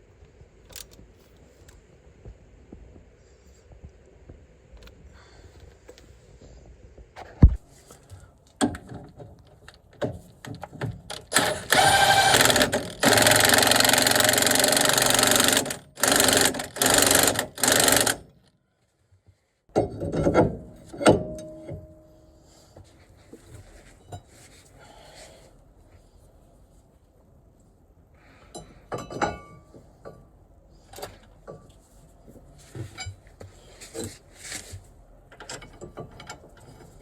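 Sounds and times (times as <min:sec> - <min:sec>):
cordless power tool running: 0:11.3 - 0:18.2.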